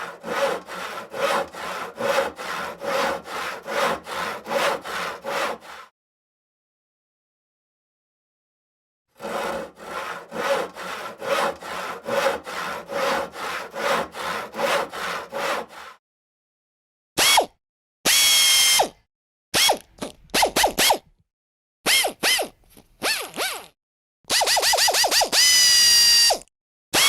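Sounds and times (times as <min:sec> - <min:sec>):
hand saw cutting wood: 0:00.0 - 0:05.9, 0:09.2 - 0:16.0, 0:21.9 - 0:25.7.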